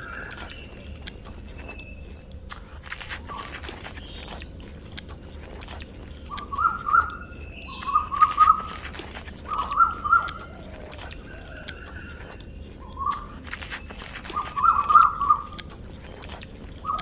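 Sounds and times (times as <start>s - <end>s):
animal chirping calls: 6.2s - 13.4s, 14.2s - 15.7s.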